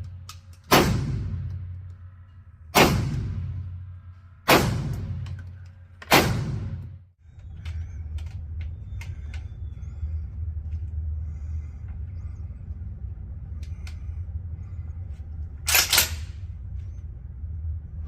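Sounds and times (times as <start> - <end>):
low rumble: 0.0 - 18.0
gunshot: 0.7 - 1.5, 2.7 - 3.6, 4.5 - 5.3, 6.1 - 7.0.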